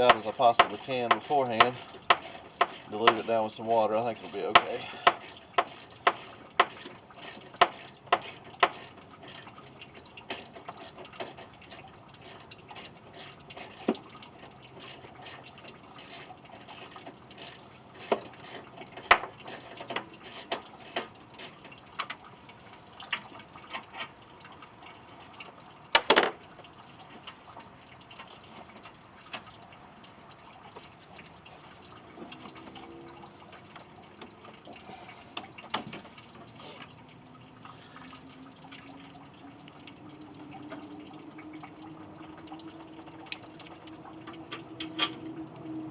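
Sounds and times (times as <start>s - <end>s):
ratchet wrench clicking: 0.0s - 9.5s, 10.3s - 14.0s, 14.8s - 15.4s, 16.0s - 21.5s.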